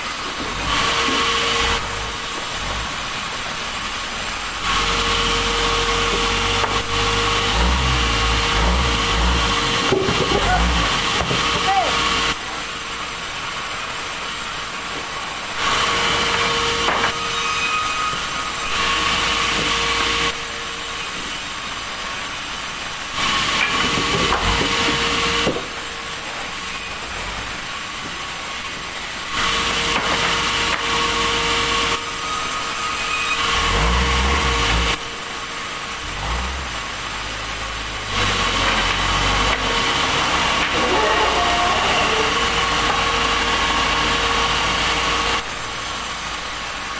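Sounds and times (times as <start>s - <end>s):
sawmill saw cutting wood: 0.0s - 22.4s, 23.1s - 46.4s.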